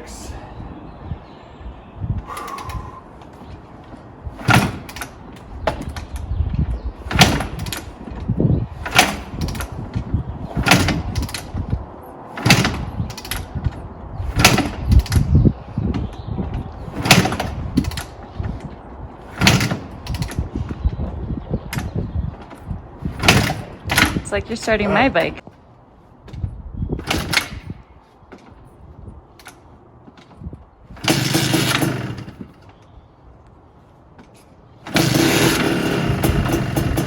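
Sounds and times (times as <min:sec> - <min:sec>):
kickstarter clunks: 0:02.3 - 0:11.8, 0:12.4 - 0:21.1, 0:21.7 - 0:24.3
engine turning over rumble: 0:07.0 - 0:18.6, 0:30.9 - 0:32.6, 0:34.8 - 0:37.0.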